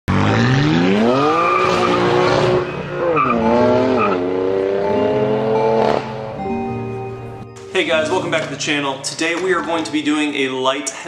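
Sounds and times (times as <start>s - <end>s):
car engine accelerating hard: 0.1s - 6.6s.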